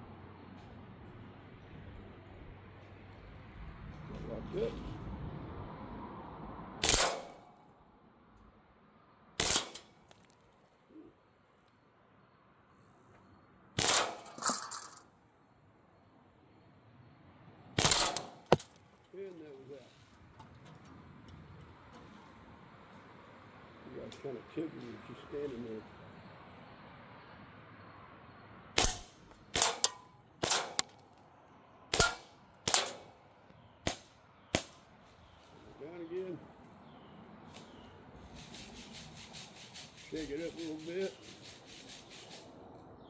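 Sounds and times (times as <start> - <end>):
bb rifle burst: 6.8 - 7.4, 9.4 - 10.3, 13.8 - 15.0, 17.8 - 18.8, 28.8 - 31.1, 31.9 - 33.1
faint cracks: 9.4 - 10.7.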